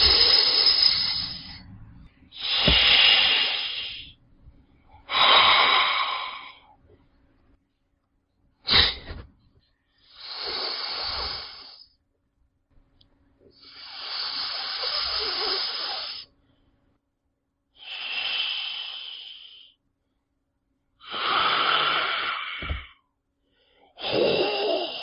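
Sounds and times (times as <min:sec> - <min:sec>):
snake hissing: 0:00.0 - 0:01.6, 0:02.4 - 0:04.2, 0:10.1 - 0:11.9, 0:13.6 - 0:16.3, 0:17.8 - 0:19.8.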